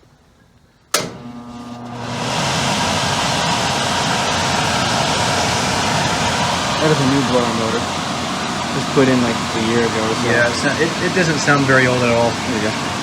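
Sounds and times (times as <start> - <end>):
sharp click: 0.9 - 1.2
furnace blower motor running: 0.9 - 13.0
rush of air: 2.0 - 13.0.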